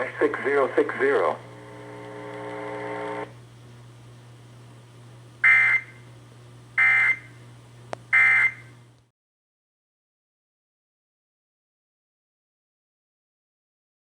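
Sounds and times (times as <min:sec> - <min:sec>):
low hum: 0:00.0 - 0:06.3.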